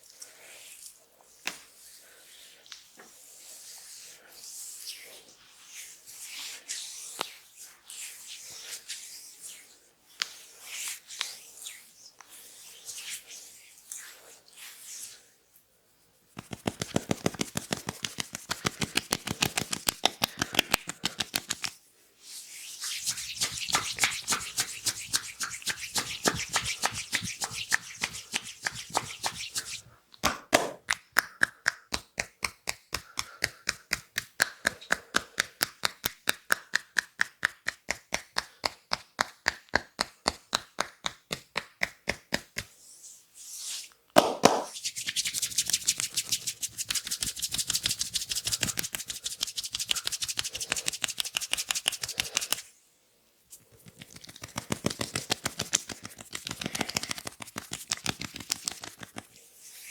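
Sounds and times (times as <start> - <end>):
hands rubbing oiled skin: 16.3 - 29.9, 30.6 - 52.7, 53.5 - 59.9
rhythmic massage hand strikes: 16.4 - 21.8, 23.2 - 42.7, 44.2 - 52.6, 53.8 - 59.3.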